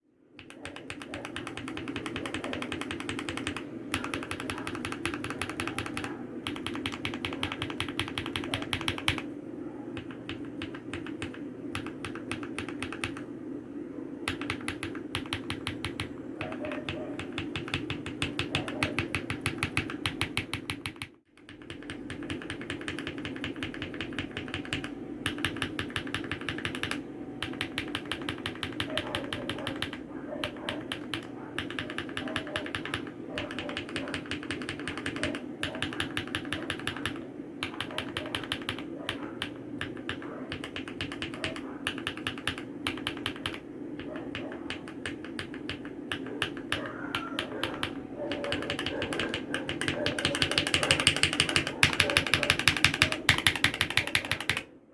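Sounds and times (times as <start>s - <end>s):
mechanical keyboard typing: 0.4s - 13.3s, 14.2s - 54.7s.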